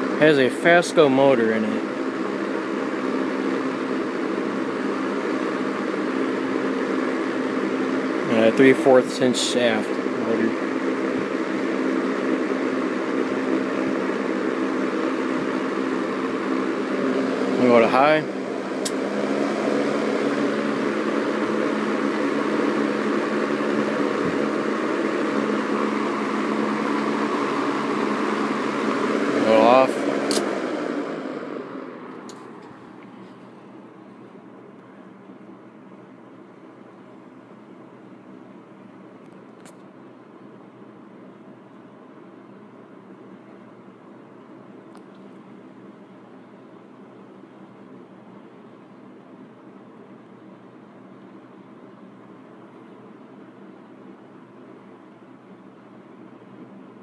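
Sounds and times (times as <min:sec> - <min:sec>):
box fan air rush: 0:00.0 - 0:35.5
fan motor hum: 0:00.0 - 0:57.0.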